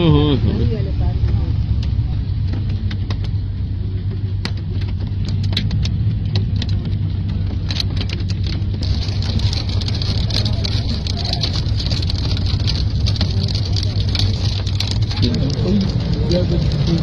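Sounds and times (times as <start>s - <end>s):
low rumble: 0.0s - 17.0s
hailstones ticking on surfaces: 4.3s - 17.0s
heavy hail and rain hissing: 4.4s - 17.0s.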